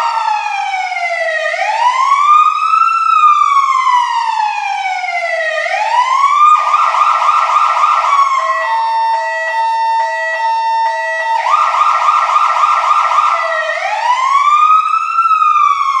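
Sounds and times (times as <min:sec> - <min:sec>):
fire truck siren: 0:00.0 - 0:16.0.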